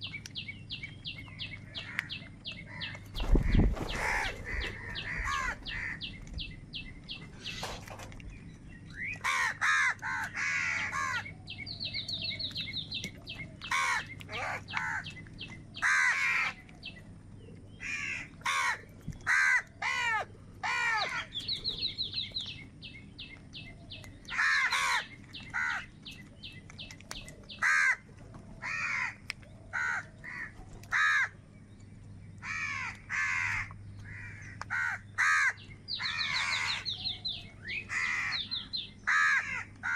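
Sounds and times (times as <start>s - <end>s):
crows cawing: 1.7s - 6.1s, 9.2s - 11.3s, 13.6s - 15.1s, 15.8s - 16.6s, 17.8s - 21.4s, 24.3s - 25.9s, 27.6s - 28.0s, 28.6s - 31.4s, 32.4s - 37.0s, 37.9s - 39.9s.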